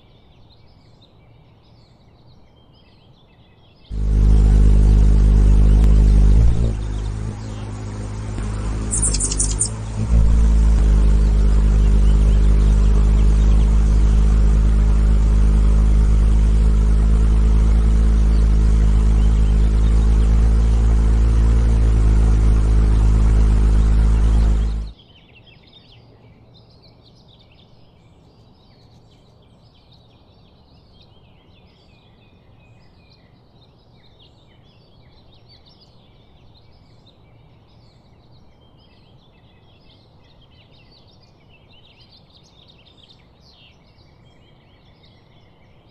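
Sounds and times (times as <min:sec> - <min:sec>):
small birds chirping: 0:00.0 - 0:45.9
loud low droning: 0:03.9 - 0:24.9.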